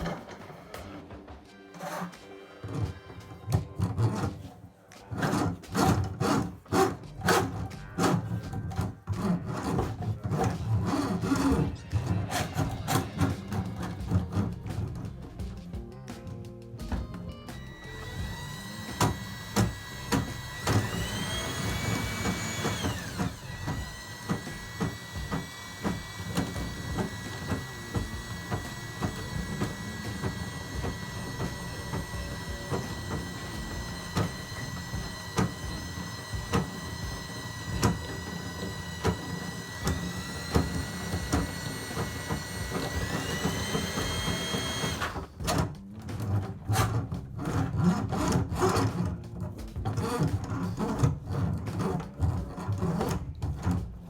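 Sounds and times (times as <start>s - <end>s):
drain-cleaning machine motor: 16.9s - 45.4s
cable clicking and knocking in pipe: 16.9s - 54.0s.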